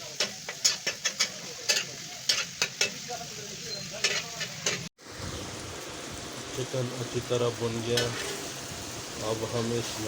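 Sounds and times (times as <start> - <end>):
chicken sizzling in hot fat: 0.0 - 10.0
spatula scraping a griddle: 0.2 - 3.0, 4.0 - 4.9, 7.9 - 8.6.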